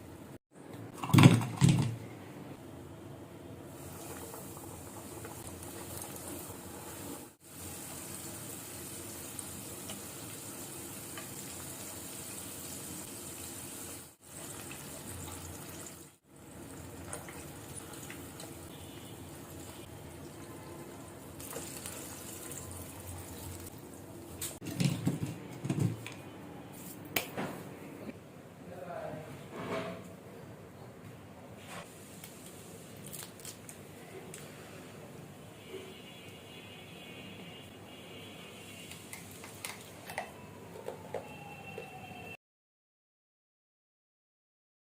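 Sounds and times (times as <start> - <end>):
chicken deep-frying in oil: 3.7 - 24.6, 36.0 - 42.3.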